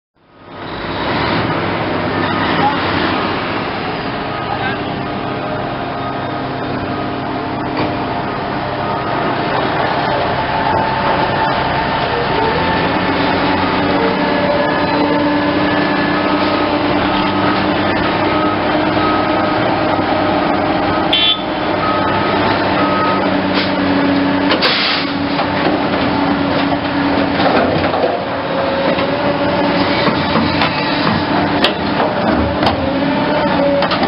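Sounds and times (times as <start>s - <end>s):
excavator diesel engine running: 0.3s - 34.0s
sharp metallic knocks: 30.0s - 32.8s.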